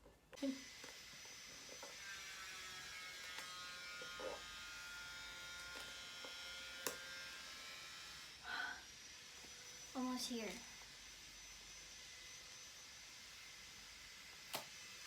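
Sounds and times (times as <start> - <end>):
tape peeling off cardboard: 3.0 - 4.5, 5.2 - 7.5, 14.3 - 14.8.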